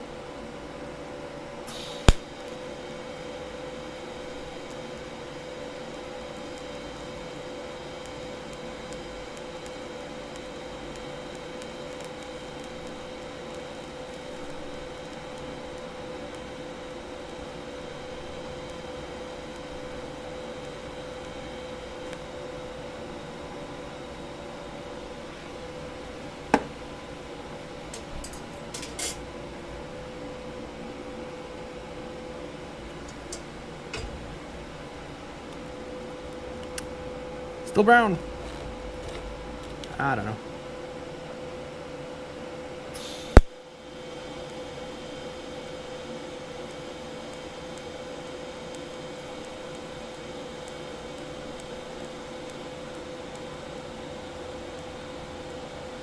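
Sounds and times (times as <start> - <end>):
steady mechanical hum: 0.0 - 56.0
welding hiss: 1.6 - 29.2, 37.6 - 40.4, 42.9 - 56.0.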